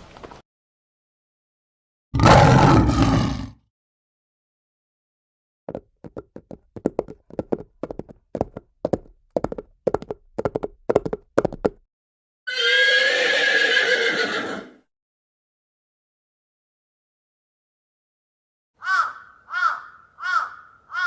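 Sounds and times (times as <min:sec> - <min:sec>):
horse hooves clip-clopping: 0:05.7 - 0:11.8
horse whinnying: 0:12.5 - 0:14.8.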